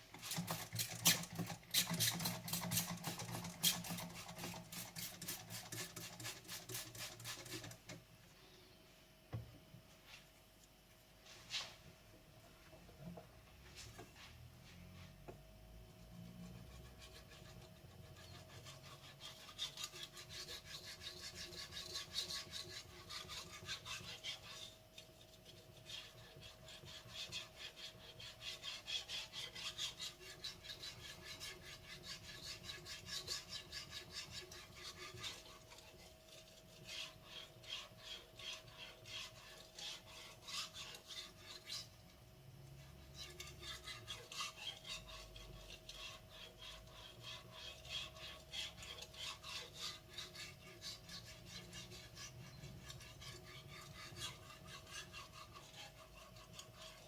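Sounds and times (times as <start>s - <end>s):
faint steady hum: 2.9s - 57.0s
knife scraping on whetstone: 16.3s - 42.0s, 42.8s - 57.0s.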